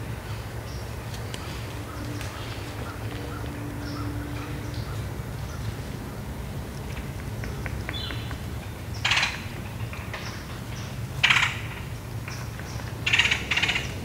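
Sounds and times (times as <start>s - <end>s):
low rumble: 0.0s - 11.2s
animal rustling in dry leaves: 0.2s - 7.2s.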